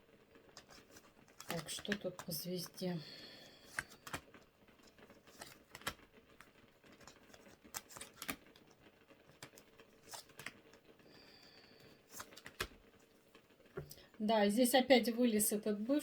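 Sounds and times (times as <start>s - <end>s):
cards clicking and tapping: 0.5s - 13.0s.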